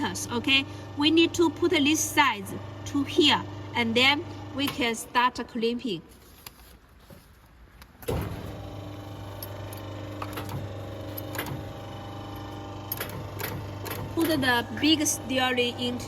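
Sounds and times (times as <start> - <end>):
machine motor humming: 8.1 - 16.0.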